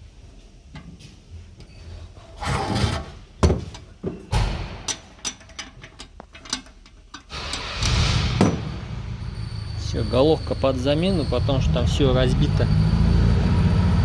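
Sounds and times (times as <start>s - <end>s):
scraping and rustling: 1.8s - 4.3s
metal parts clinking and knocking: 3.4s - 8.7s.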